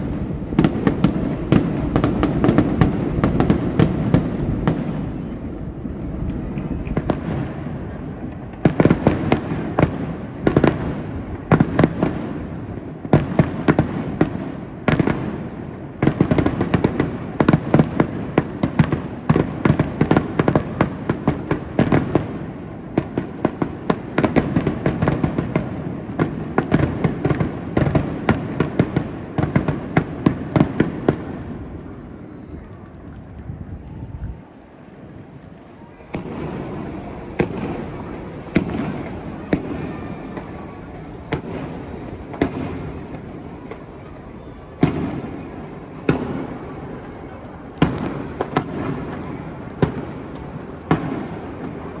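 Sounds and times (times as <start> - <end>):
firework shells bursting: 0.0 - 7.5, 34.7 - 51.3
continuous rumble: 0.0 - 10.5, 32.1 - 52.0.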